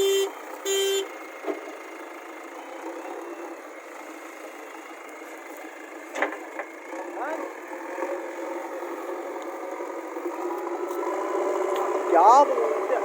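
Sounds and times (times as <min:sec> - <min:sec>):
vehicle horn toot: 0:00.0 - 0:01.2
engine running steadily: 0:00.0 - 0:13.0
outdoor background noise: 0:00.0 - 0:13.0.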